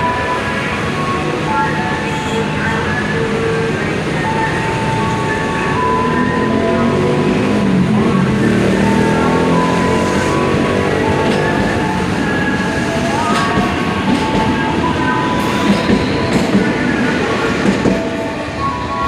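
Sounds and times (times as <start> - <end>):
train wheels rumbling on rails: 0.0 - 19.0
clacks over rail joints: 10.5 - 12.2, 13.0 - 18.3.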